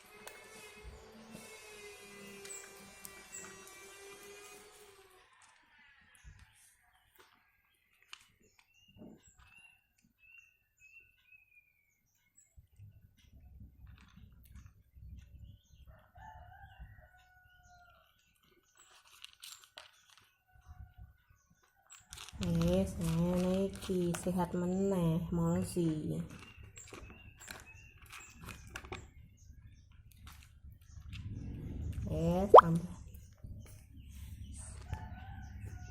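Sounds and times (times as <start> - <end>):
cat eating crunchy food: 13.7 - 14.9, 18.5 - 20.4, 22.0 - 24.3, 26.3 - 32.0.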